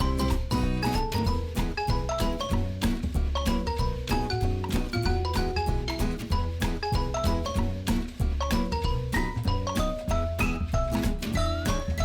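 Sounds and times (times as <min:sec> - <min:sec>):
background music with beat: 0:00.0 - 0:12.0.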